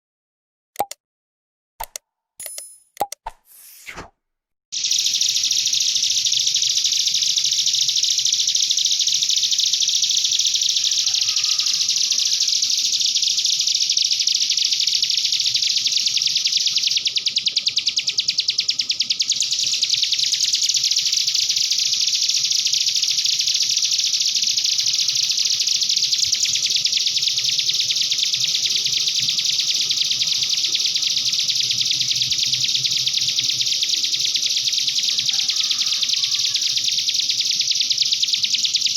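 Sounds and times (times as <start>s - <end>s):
songbird trilling chatter: 9.4s - 13.5s, 24.1s - 38.9s.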